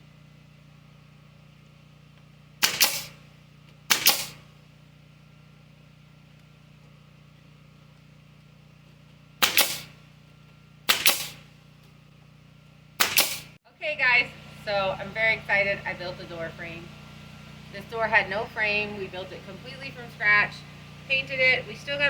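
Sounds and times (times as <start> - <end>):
steady low hum: 0.0 - 22.0
hammer striking nails: 2.6 - 3.2, 3.9 - 4.4, 9.4 - 10.0, 10.9 - 11.4, 13.0 - 13.5.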